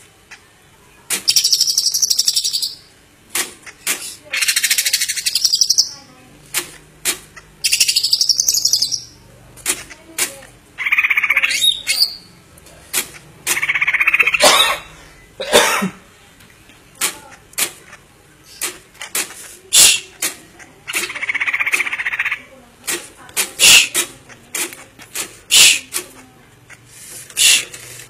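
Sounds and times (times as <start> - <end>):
sharp bird chips and clicks: 1.1 - 12.4, 13.0 - 14.5, 17.0 - 26.8
bird singing buzzy chattering: 1.3 - 2.9, 4.3 - 6.1, 7.4 - 9.2, 10.8 - 12.4, 13.4 - 14.8, 20.8 - 22.5.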